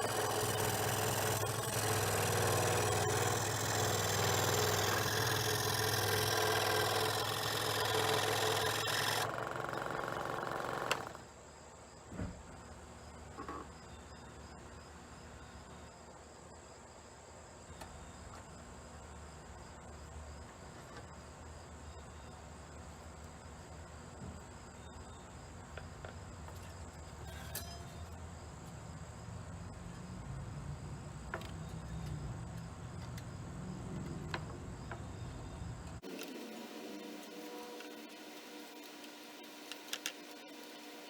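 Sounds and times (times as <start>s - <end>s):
scroll saw buzzing and whining: 0.0s - 11.3s, 36.0s - 41.0s.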